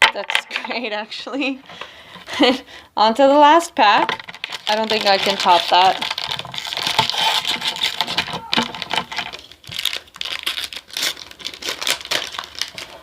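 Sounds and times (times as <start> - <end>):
foil wrapper crinkling and tearing: 4.2 - 13.0.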